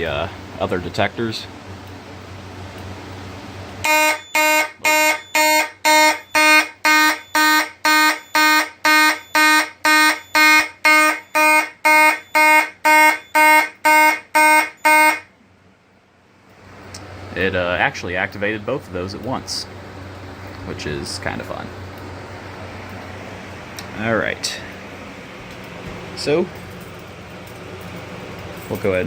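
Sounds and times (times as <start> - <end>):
fire alarm horn blasts: 3.8 - 15.4.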